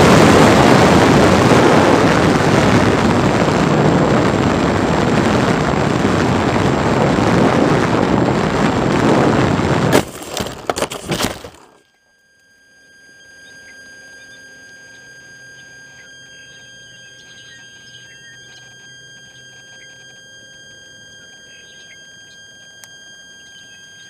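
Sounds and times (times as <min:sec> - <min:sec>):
model plane motor and propeller: 0:00.0 - 0:24.0
plane crashing into tree: 0:09.8 - 0:11.8.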